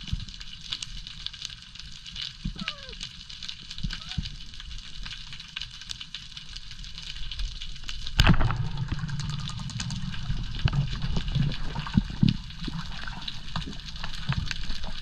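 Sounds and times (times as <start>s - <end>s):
crackling clicks: 0.0s - 15.0s
muffled rumble of moving water: 0.0s - 15.0s
sharp underwater crack: 8.1s - 13.7s.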